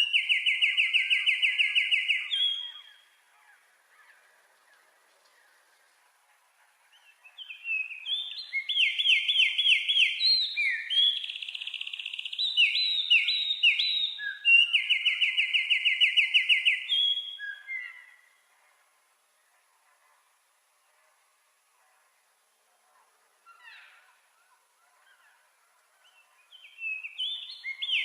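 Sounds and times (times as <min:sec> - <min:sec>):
wren singing: 0:00.0 - 0:03.1, 0:07.0 - 0:18.1, 0:26.1 - 0:28.0.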